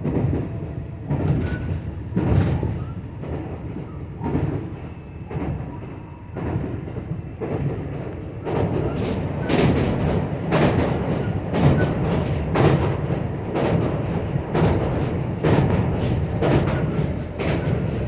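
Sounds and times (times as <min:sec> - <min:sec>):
electric train rumbling: 0:00.0 - 0:18.0
wheels clacking over rail joints: 0:07.4 - 0:18.0.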